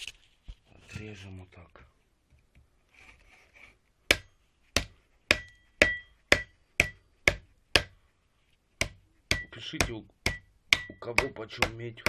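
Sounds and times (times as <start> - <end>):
hammer striking metal: 4.1 - 8.0, 8.8 - 11.8.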